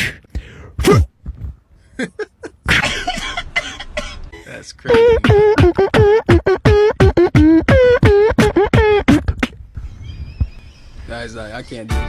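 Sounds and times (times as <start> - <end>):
beatboxing mouth sounds: 0.0 - 1.1, 4.9 - 9.6.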